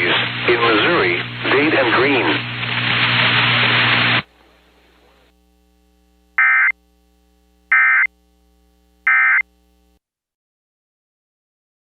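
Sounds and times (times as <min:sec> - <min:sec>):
faint steady hum: 0:00.0 - 0:10.0
digital data tone bursts: 0:06.4 - 0:06.8, 0:07.7 - 0:08.1, 0:09.1 - 0:09.4.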